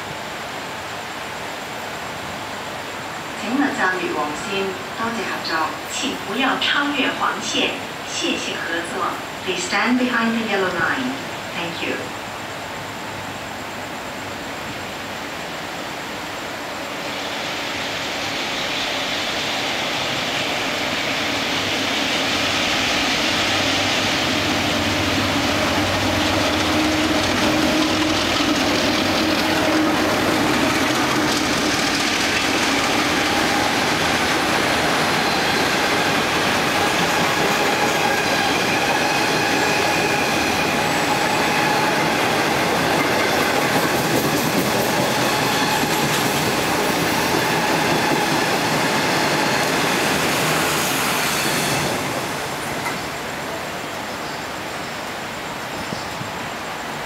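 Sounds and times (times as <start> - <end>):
passenger train passing: 0.0 - 57.0
train wheels squealing on rails: 16.8 - 57.0.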